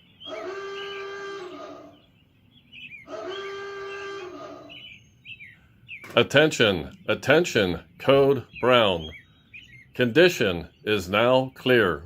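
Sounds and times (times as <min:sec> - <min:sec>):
alarm horn tones: 0:00.0 - 0:02.1, 0:03.0 - 0:05.0
faint bird chirps: 0:00.0 - 0:12.0.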